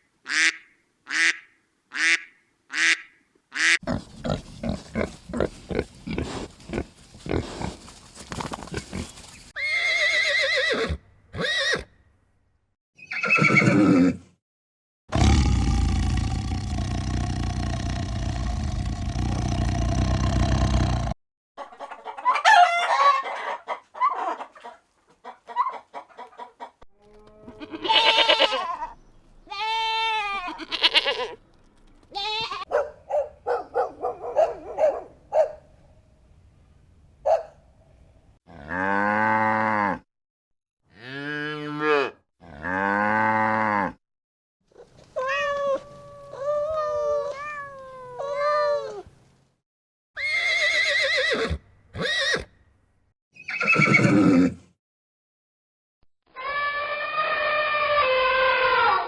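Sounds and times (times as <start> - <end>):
animals bleating: 27.1 - 28.9, 29.5 - 31.4.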